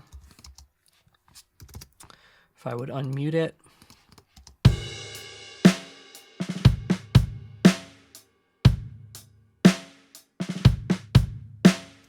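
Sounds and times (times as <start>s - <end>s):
slow drum kit loop: 4.7s - 12.0s.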